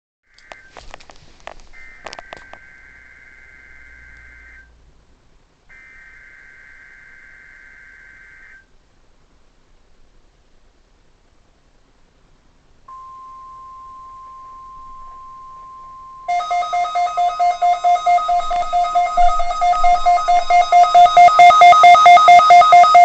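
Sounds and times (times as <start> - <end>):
two-tone data buzz: 1.8 - 4.7, 12.9 - 23.0
faint hiss: 8.4 - 16.3.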